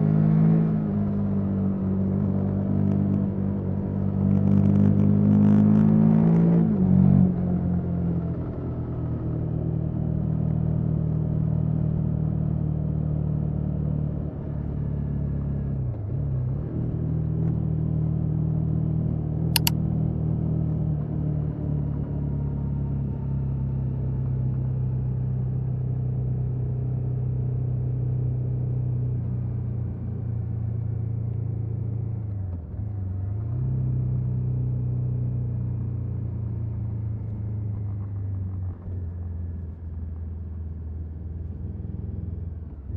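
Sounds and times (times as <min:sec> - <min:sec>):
sharp click: 0:19.6 - 0:19.8.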